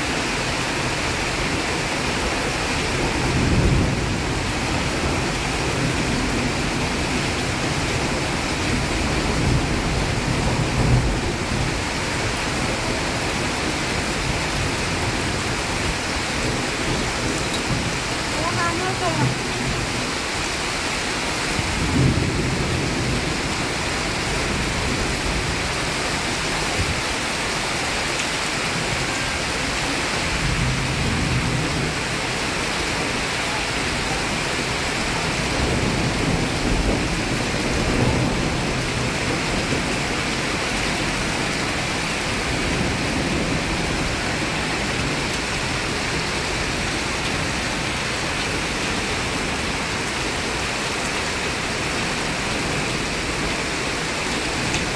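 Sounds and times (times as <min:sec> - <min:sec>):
heavy rain hissing: 0:00.0 - 0:54.9
rushing water: 0:00.0 - 0:54.9.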